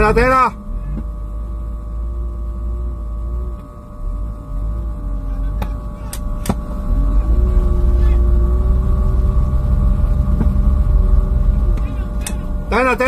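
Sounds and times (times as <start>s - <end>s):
boat engine low rumble: 0.0s - 13.0s
wavering machinery hum: 0.0s - 13.0s.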